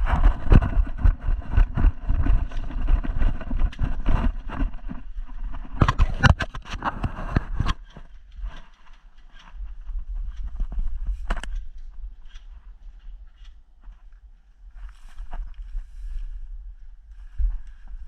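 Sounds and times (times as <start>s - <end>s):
wind buffeting microphone: 0.0s - 7.9s, 14.6s - 18.0s
gear rattling: 0.0s - 14.2s
running footsteps: 0.0s - 18.0s.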